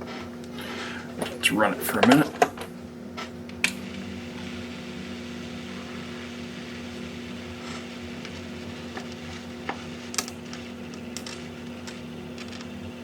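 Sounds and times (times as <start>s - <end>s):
small electric motor humming: 3.8s - 12.9s.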